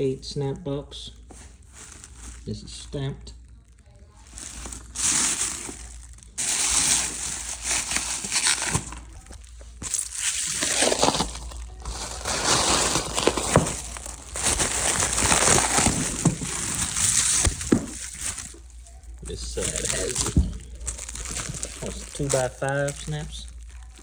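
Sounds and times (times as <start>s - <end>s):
plastic packaging crinkling: 1.1s - 24.0s.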